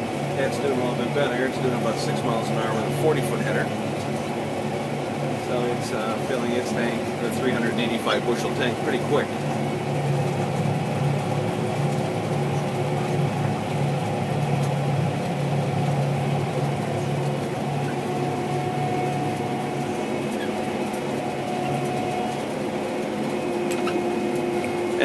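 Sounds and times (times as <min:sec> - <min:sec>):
combine harvester machinery drone: 0:00.0 - 0:25.0.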